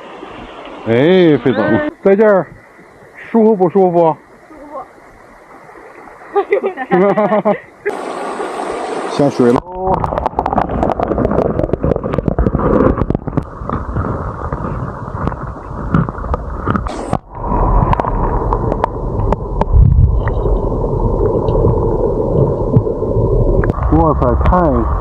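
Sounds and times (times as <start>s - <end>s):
gurgling underwater stream: 0.0s - 25.0s
dull underwater rumble: 9.6s - 25.0s.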